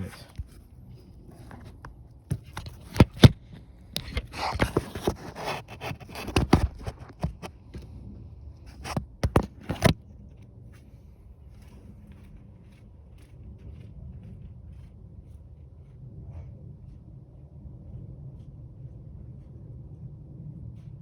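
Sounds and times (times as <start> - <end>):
clicks knocks and scraping of objects: 1.3 - 8.0, 8.7 - 10.0.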